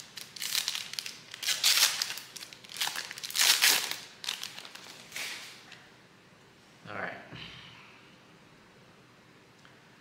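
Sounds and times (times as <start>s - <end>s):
wrapper tearing and crinkling: 0.0s - 5.5s.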